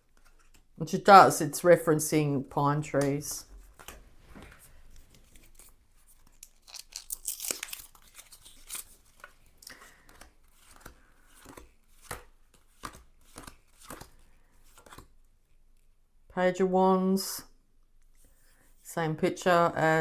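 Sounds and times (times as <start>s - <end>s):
cards being flipped: 0.1s - 0.7s, 3.0s - 15.2s.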